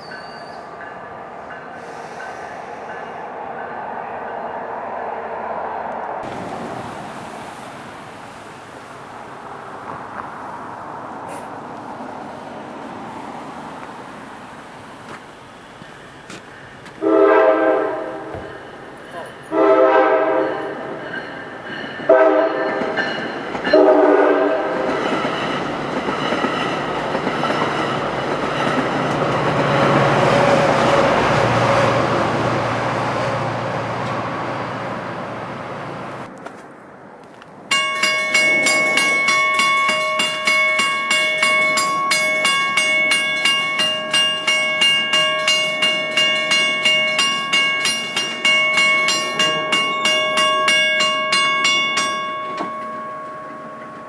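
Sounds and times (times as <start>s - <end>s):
crossing bell ringing: 0.0s - 4.7s, 15.8s - 30.0s, 37.7s - 54.0s
train rushing past: 0.0s - 54.0s
train horn blasts: 17.0s - 18.5s, 19.5s - 20.9s, 22.1s - 22.9s, 23.7s - 24.9s.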